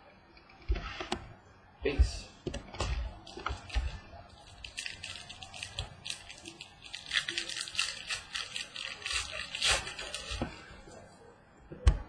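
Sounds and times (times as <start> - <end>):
packaging crinkling: 3.2 - 10.6.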